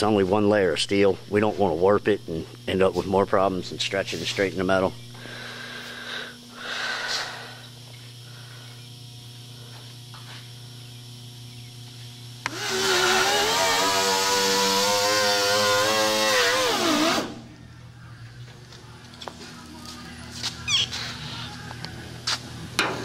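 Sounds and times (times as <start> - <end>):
power tool whining: 5.2 - 17.6.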